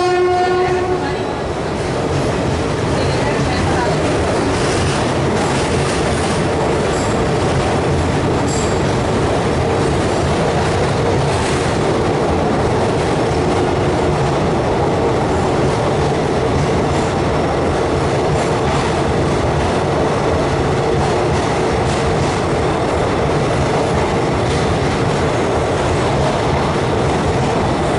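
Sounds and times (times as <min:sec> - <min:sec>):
train rumbling and clattering: 0:00.0 - 0:27.9
train wheel squeal: 0:08.4 - 0:08.9.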